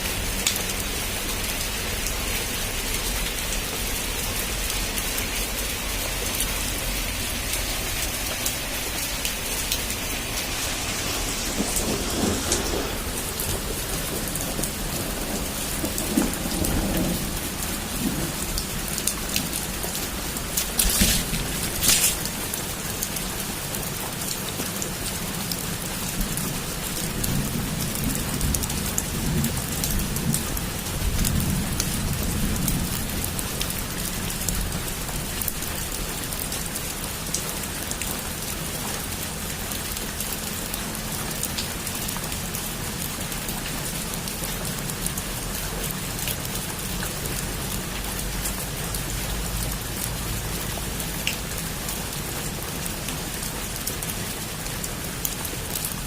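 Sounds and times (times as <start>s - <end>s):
heavy rain on a rooftop: 0.0s - 56.0s
low rumble of thunder: 8.8s - 22.5s, 25.7s - 34.9s.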